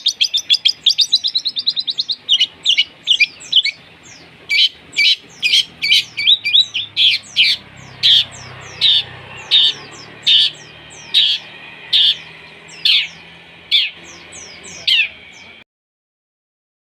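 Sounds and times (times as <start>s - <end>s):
shrill bird chirps falling in pitch: 4.5s - 15.2s.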